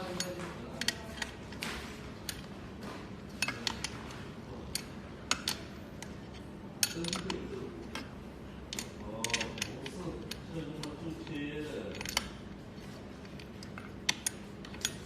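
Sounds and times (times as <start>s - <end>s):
metal parts and tools clinking: 0.0s - 2.5s, 3.3s - 8.1s, 8.7s - 12.4s, 13.2s - 15.0s.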